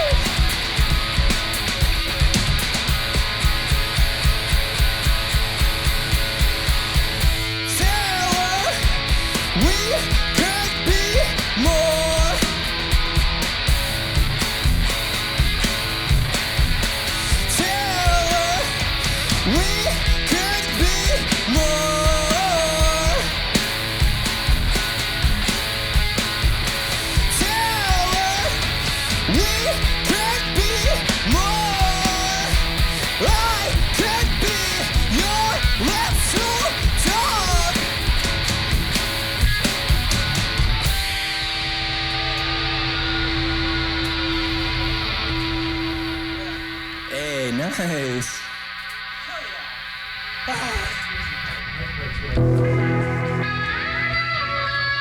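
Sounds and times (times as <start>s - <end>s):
loud steady drumming: 0.0s - 41.4s
electric guitar bending notes: 0.0s - 47.2s, 49.8s - 55.0s.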